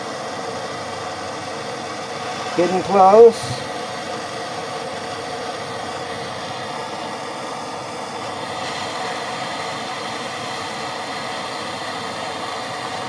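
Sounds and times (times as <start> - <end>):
gas torch flame hissing: 0.0 - 13.0.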